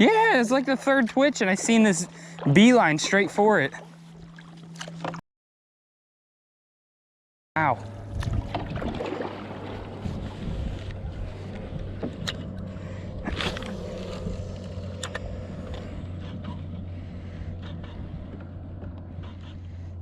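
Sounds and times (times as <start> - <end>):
motor humming: 7.8 - 20.0.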